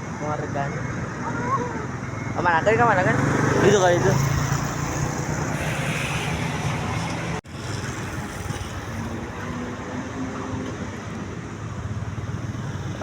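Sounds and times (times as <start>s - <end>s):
bus engines and traffic rumble: 0.0s - 13.0s.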